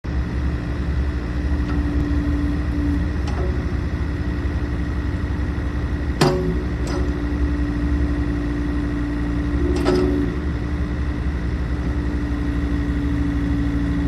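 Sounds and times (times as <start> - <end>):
diesel engine idling: 0.0 - 14.0.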